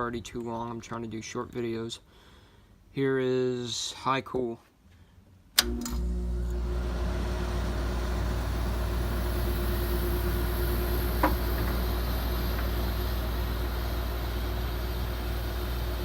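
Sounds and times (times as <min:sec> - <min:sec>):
air conditioner click: 0:05.6 - 0:06.6
air conditioner running: 0:05.6 - 0:16.0.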